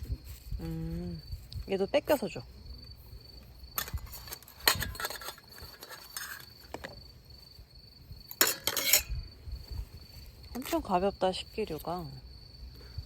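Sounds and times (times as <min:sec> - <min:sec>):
dishes and cutlery clinking: 0:08.4 - 0:09.2.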